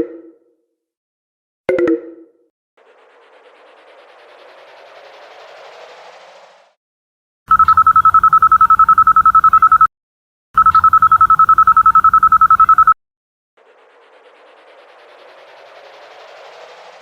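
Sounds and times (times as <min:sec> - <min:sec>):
phone beep tone pulsing rapidly: 0:07.5 - 0:09.9, 0:10.6 - 0:13.0.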